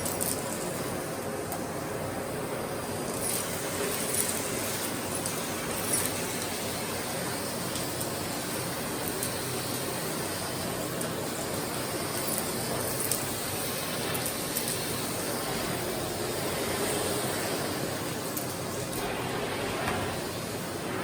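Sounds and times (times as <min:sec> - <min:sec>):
vacuum cleaner running: 0:14.8 - 0:21.0.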